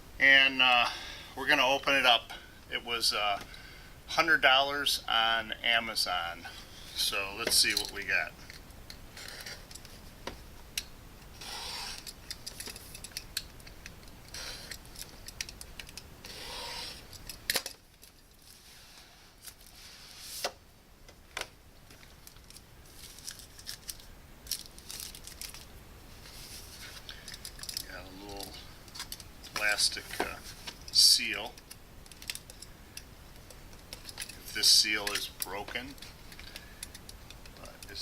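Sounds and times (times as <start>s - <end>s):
packaging rubbing and sliding: 11.3s - 13.1s, 16.2s - 17.2s, 18.4s - 20.6s.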